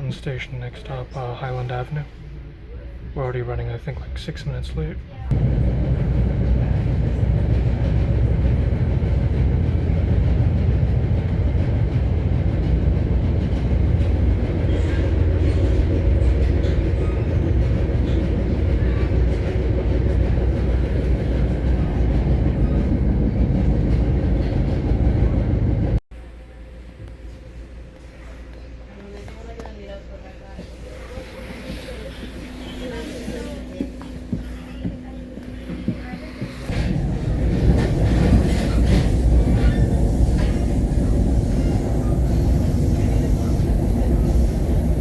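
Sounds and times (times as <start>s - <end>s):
train coach rumble: 0.0s - 26.0s, 28.0s - 45.0s.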